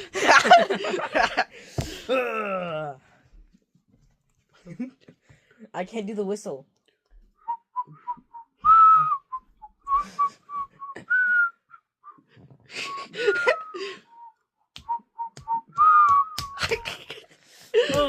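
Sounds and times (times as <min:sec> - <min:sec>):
person whistling like a bird: 0:07.4 - 0:16.6.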